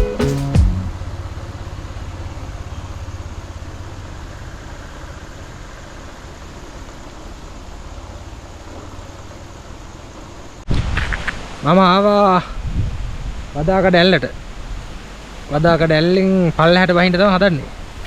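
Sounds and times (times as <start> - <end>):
vehicle engine running: 0.0 - 10.6
steady rushing noise: 0.0 - 18.0.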